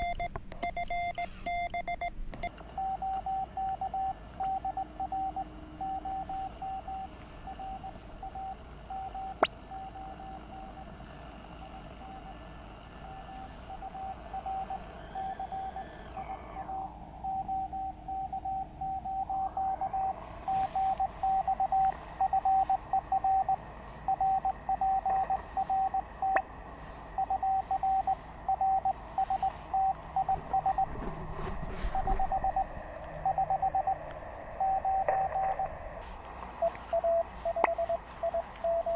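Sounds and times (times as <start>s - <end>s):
morse code tone: 0.0s - 11.0s, 11.6s - 26.4s, 27.2s - 35.8s, 36.6s - 38.9s.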